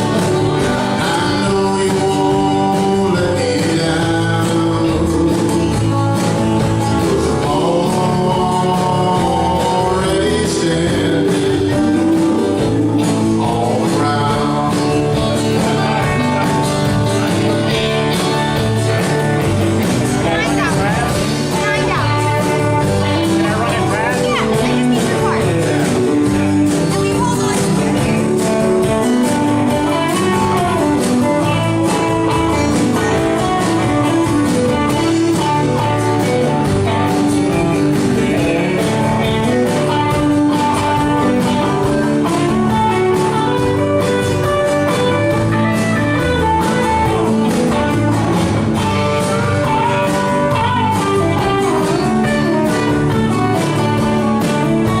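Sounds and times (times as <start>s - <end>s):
guitar: 0.0s - 55.0s
live band playing: 0.0s - 55.0s
steady drum beat: 0.0s - 55.0s.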